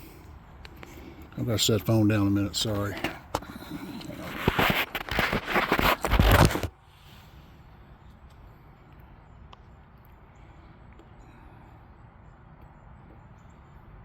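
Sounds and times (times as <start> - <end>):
phone handling noise: 2.8 - 6.7.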